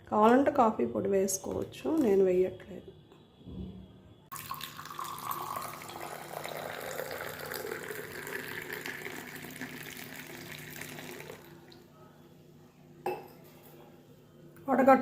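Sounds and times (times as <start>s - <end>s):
liquid pouring: 4.3s - 11.8s.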